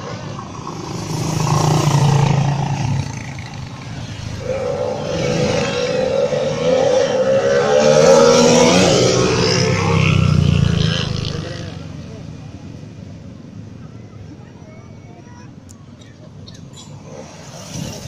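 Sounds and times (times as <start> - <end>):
motorcycle engine accelerating: 0.6 - 11.8.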